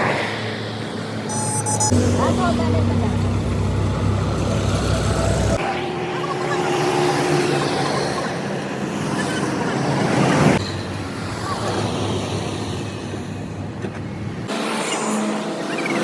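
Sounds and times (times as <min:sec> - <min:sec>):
road traffic noise: 0:00.0 - 0:16.0
vehicle passing: 0:01.9 - 0:05.6.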